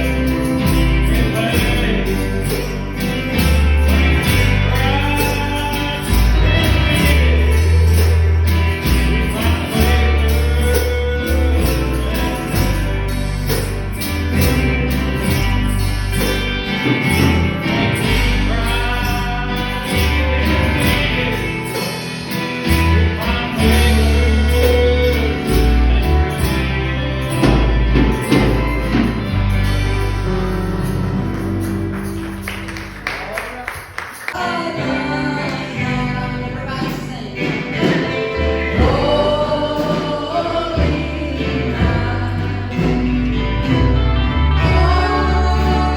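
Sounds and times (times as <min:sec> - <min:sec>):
gospel singing: 0:00.0 - 0:32.2, 0:34.0 - 0:45.9
tambourine: 0:00.0 - 0:34.4
bass line: 0:00.0 - 0:45.9.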